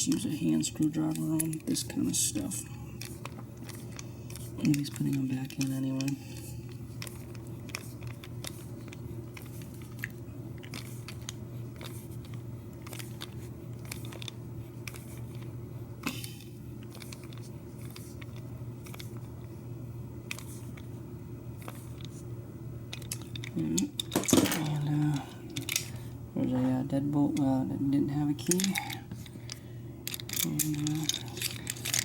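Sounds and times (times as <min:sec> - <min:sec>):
steady low hum: 0:00.0 - 0:32.0
screwdriver clicking and scraping: 0:03.0 - 0:06.2, 0:22.9 - 0:26.0, 0:28.4 - 0:32.0.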